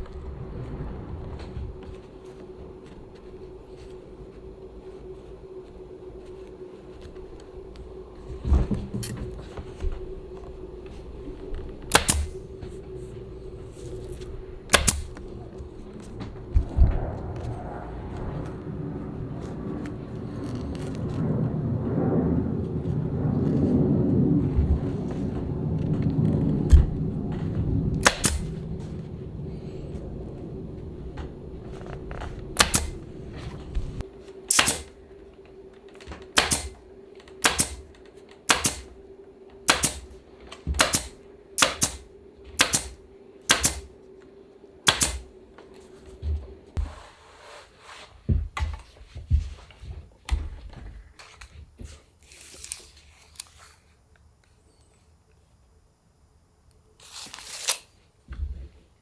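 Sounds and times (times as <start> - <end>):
steady hum: 0.0 - 45.6
staple gun snapping into wood: 11.9 - 12.4, 14.7 - 15.1, 28.0 - 28.5, 32.6 - 32.9, 34.5 - 34.9, 36.4 - 36.8, 37.4 - 37.8, 38.5 - 38.9, 39.7 - 40.0, 40.8 - 42.0, 42.6 - 43.9, 44.9 - 45.2.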